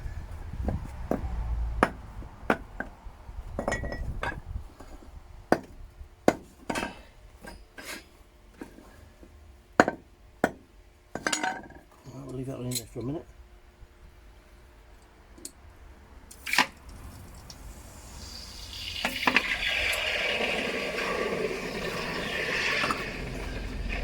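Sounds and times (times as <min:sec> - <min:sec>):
metallic clinks and knocks: 0:03.6 - 0:04.4.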